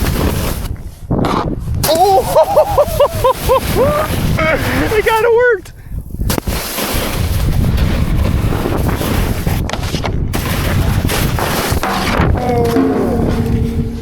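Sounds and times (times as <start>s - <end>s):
snowboard sliding over snow: 0.0s - 5.5s, 6.1s - 14.0s
wind buffeting microphone: 0.0s - 14.0s
sharp knocks: 11.7s - 14.0s.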